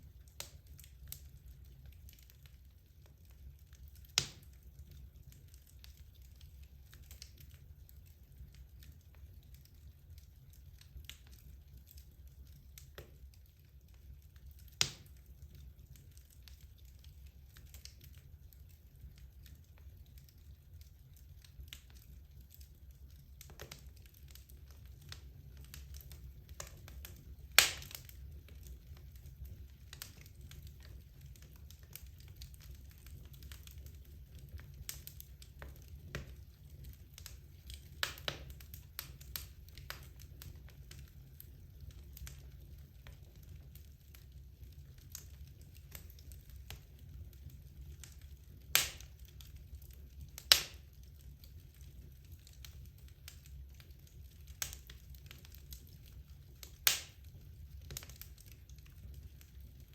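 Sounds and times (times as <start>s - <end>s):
fire rumbling: 0.0s - 59.9s
wood crackling: 0.1s - 59.9s
sharp pops from fire: 0.2s - 2.5s, 4.0s - 7.6s, 14.4s - 17.0s, 21.5s - 41.2s, 48.0s - 49.4s, 50.1s - 51.4s, 54.2s - 58.8s.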